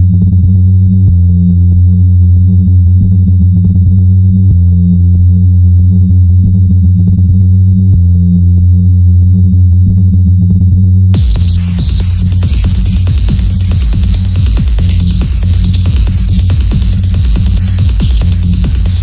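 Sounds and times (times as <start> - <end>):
industrial electronic music: 11.2 - 19.0.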